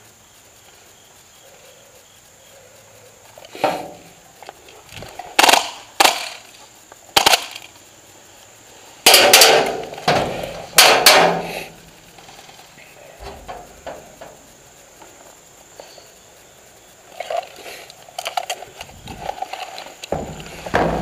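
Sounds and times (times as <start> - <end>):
airsoft gunshots: 5.3 - 6.5, 7.2 - 7.7, 9.0 - 11.7.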